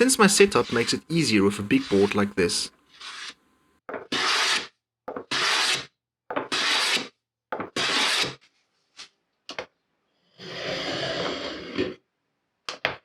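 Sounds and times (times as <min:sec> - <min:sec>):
hand plane shaving wood: 0:00.0 - 0:03.4, 0:04.1 - 0:05.9, 0:06.5 - 0:07.1, 0:07.7 - 0:08.4.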